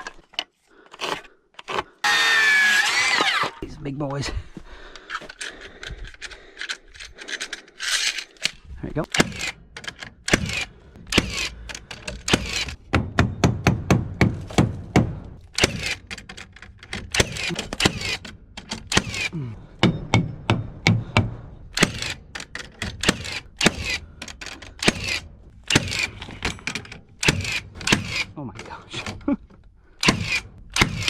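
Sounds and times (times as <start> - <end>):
hammer striking nails into wood: 12.1 - 16.0.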